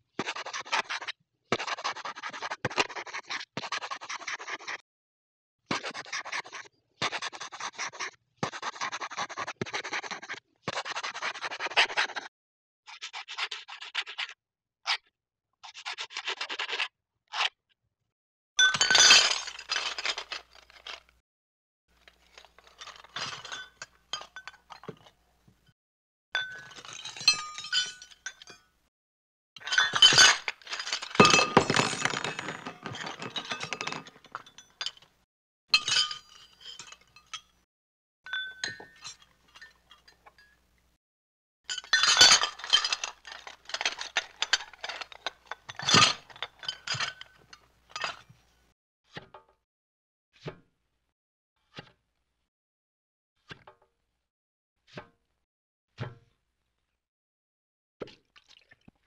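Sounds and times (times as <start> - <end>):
glass-like crashes: 29.6 - 35.0.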